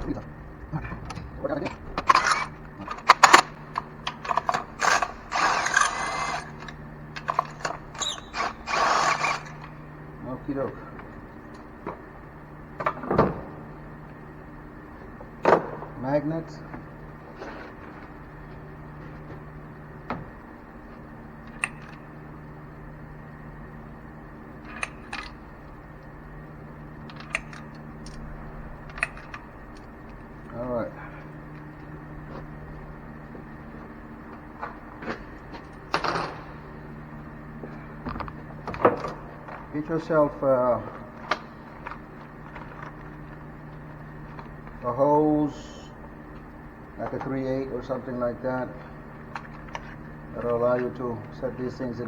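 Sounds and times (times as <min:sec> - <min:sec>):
steady fan hum: 0:00.0 - 0:52.0
socket ratchet clicking: 0:27.1 - 0:28.2.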